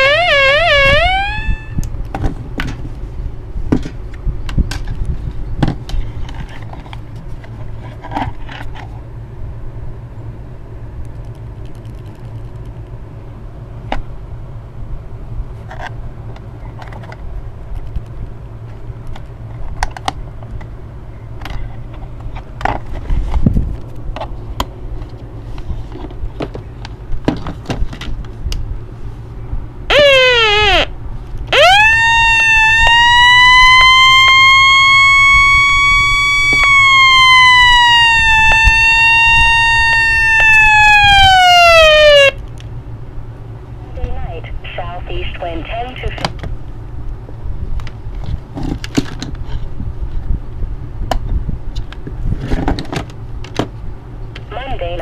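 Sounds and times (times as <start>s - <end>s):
short tone blips: 0.0s - 1.8s
radio low hum: 43.8s - 46.4s, 54.5s - 55.0s.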